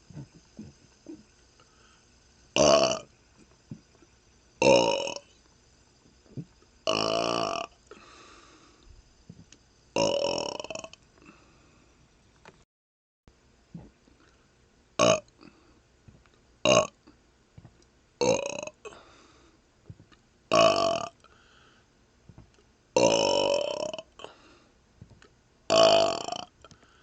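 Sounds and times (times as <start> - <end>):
man burping: 2.6 - 3.0, 4.6 - 5.3, 6.9 - 8.3, 10.0 - 11.4, 15.0 - 15.6, 16.7 - 17.0, 18.2 - 19.0, 20.5 - 21.2, 23.0 - 24.4, 25.7 - 26.5.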